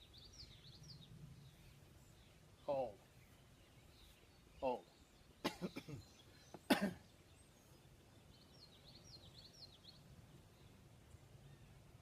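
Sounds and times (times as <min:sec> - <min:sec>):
faint bird chirping: 0:00.0 - 0:12.0
cough-like snorts: 0:06.7 - 0:07.0.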